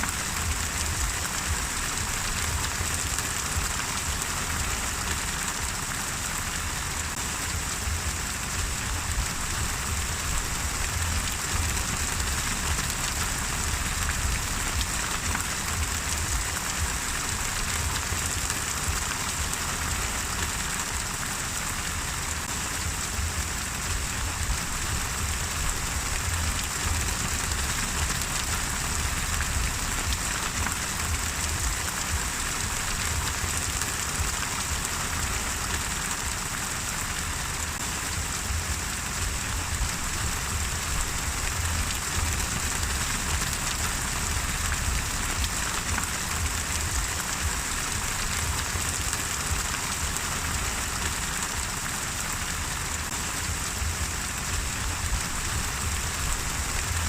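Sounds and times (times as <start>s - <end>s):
steady rain falling: 0.0s - 57.0s
low rumble: 7.4s - 18.5s, 22.7s - 33.4s, 38.0s - 48.8s.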